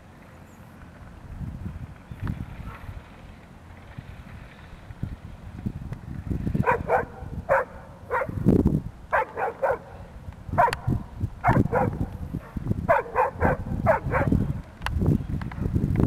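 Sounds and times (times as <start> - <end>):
dog barking excitedly: 6.6 - 8.4, 9.1 - 10.0, 10.6 - 12.1, 12.9 - 14.4.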